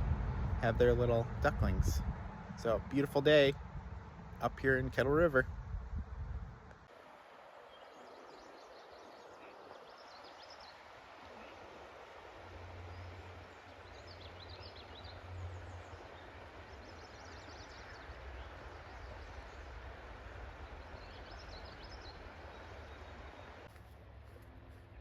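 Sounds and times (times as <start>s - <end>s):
low rumble: 0.0s - 6.7s
steady rushing noise: 0.0s - 9.5s, 10.7s - 23.7s
bird chirping: 12.8s - 23.7s.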